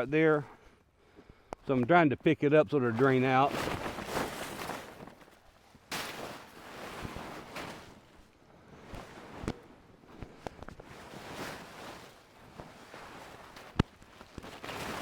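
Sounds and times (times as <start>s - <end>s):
plastic tarp rustling: 2.9s - 8.3s, 10.7s - 15.0s.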